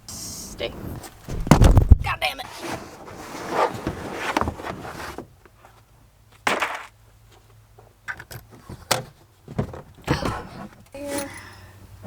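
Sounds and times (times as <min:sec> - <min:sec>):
rustling and handling noise: 0:00.4 - 0:06.4.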